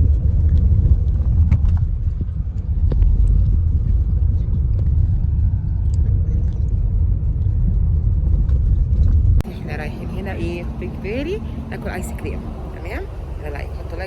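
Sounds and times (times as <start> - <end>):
car cabin rumble: 0.0 - 14.0.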